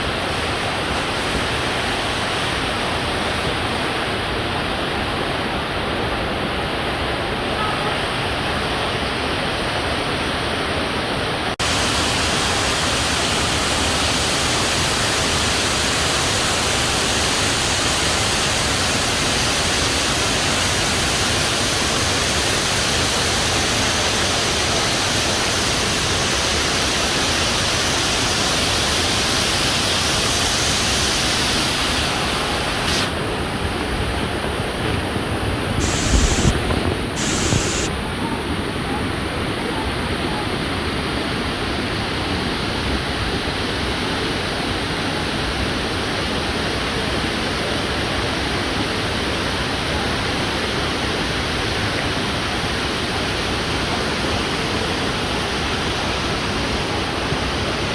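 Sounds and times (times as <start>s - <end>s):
waterfall roaring: 0.0s - 57.9s.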